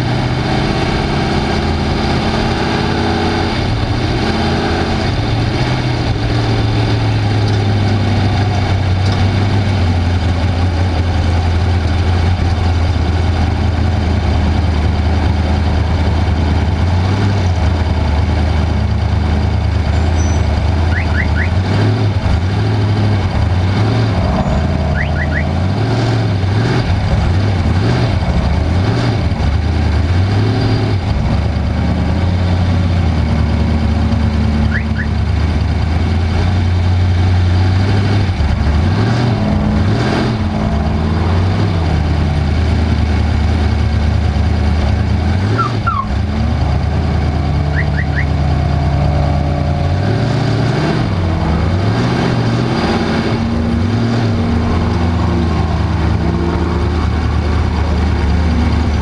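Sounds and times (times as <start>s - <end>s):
race vehicle engine revving: 0.0s - 59.0s
high double chirps: 24.3s - 25.6s, 45.6s - 46.2s, 47.7s - 48.4s.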